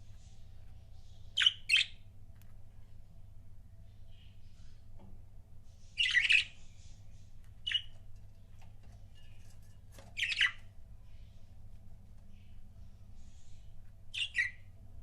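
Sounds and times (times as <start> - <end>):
soft bird chirps: 0.0 - 2.1, 5.7 - 14.8
budgerigars calling: 10.2 - 10.6, 14.2 - 14.6.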